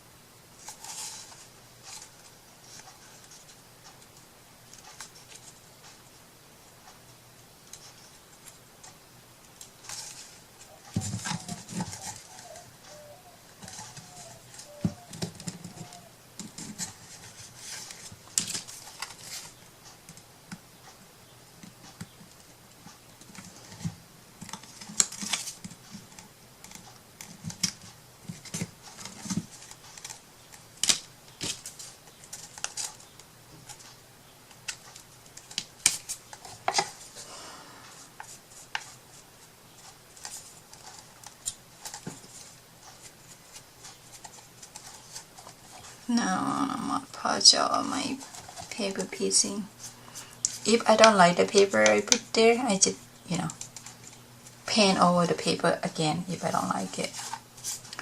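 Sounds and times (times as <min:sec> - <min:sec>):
paper rustling: 0:56.4 - 0:58.0.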